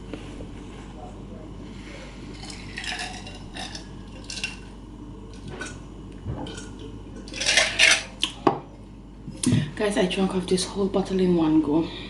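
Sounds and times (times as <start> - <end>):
dishes and utensils clinking: 6.4 - 8.1.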